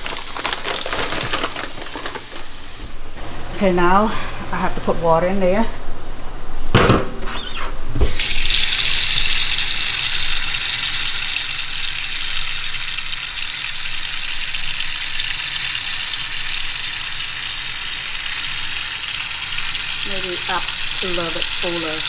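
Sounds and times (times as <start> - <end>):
knocks: 6.7 - 7.4
tap water filling a pot: 8.1 - 22.0.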